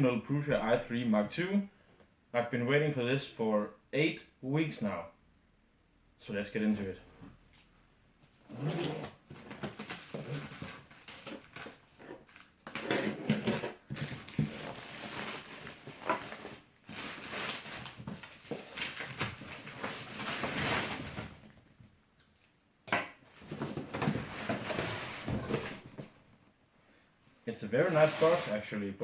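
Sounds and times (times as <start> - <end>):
cardboard box rubbing and scraping: 27.8 - 28.6.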